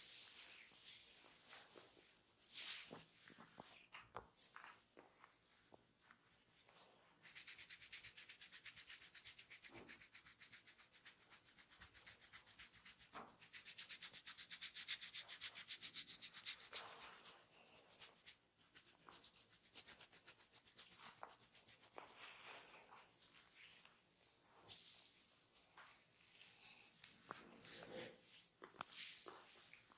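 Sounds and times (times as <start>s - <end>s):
hands rubbing skin: 6.0s - 23.9s.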